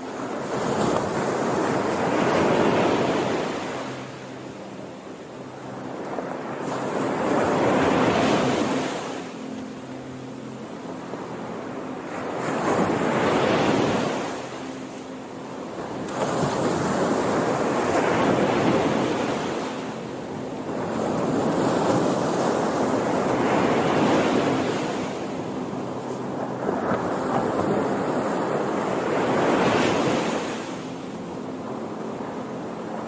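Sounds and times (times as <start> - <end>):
ocean waves breaking: 0.0 - 33.0.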